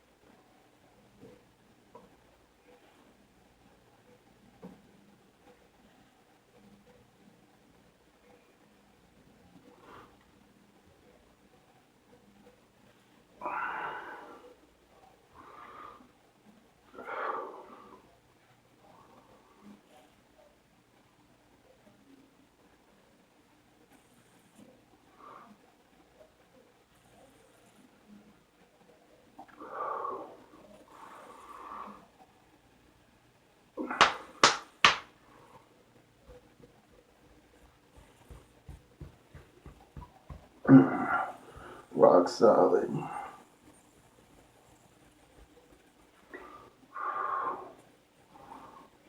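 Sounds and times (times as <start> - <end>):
sharp slaps: 33.8 - 35.1
rough throat sounds: 40.6 - 41.8
man belching: 40.7 - 41.1.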